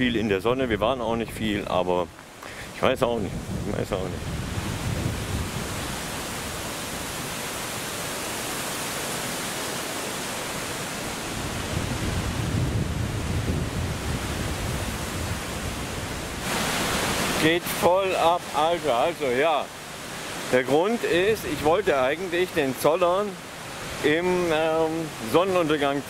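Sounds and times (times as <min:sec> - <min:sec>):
gusty wind on microphone: 0:00.0 - 0:20.5.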